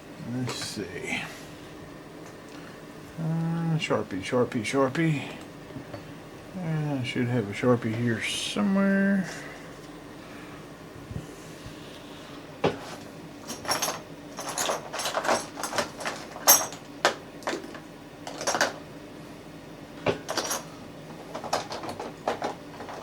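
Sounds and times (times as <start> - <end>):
clinks knocks and clatters: 13.4 - 18.8, 20.1 - 20.7.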